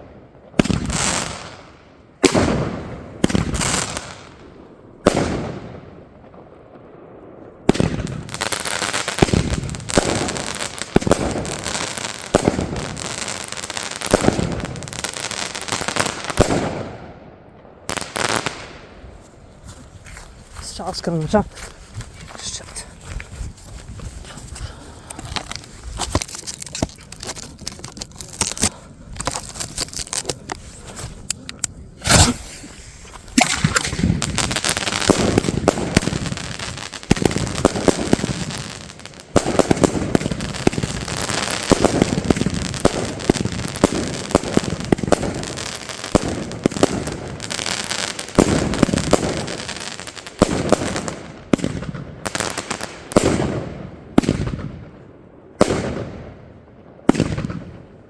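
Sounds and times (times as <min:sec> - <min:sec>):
firework launches and bursts: 0:32.0 - 0:53.6.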